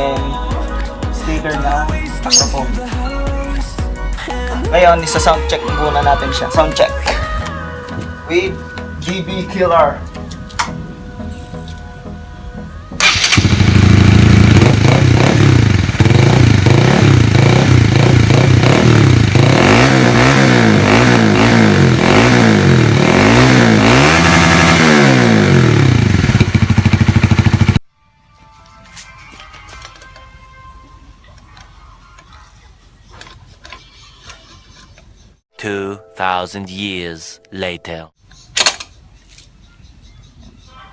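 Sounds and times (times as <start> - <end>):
motorcycle engine idling and revving: 13.0 - 27.8.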